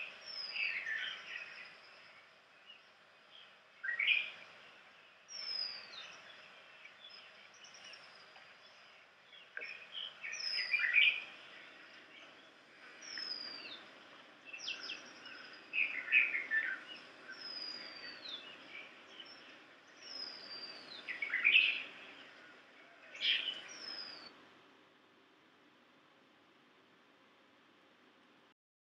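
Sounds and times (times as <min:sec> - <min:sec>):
birds chirping: 0:00.0 - 0:24.4.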